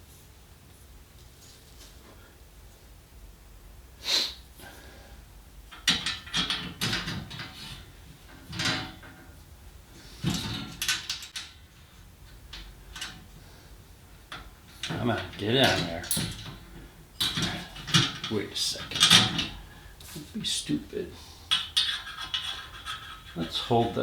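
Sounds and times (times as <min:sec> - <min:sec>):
knocking rattling and scraping: 0:05.7 - 0:20.8, 0:21.4 - 0:24.0.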